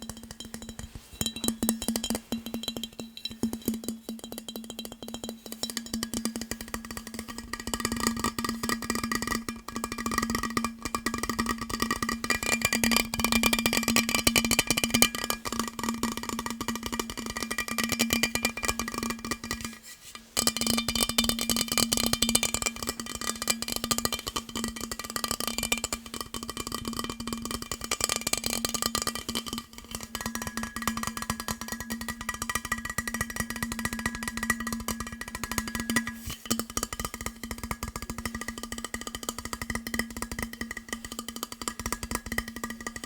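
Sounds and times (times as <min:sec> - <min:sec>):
steady ringing tones: 0:00.0 - 0:04.9
fast tapping on hard items: 0:00.0 - 0:43.0.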